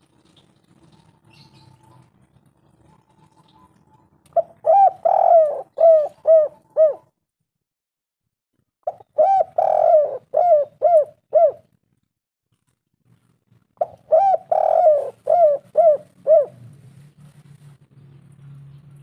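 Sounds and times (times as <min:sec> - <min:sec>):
dove cooing: 0:02.7 - 0:07.2, 0:08.9 - 0:11.7, 0:13.8 - 0:16.8.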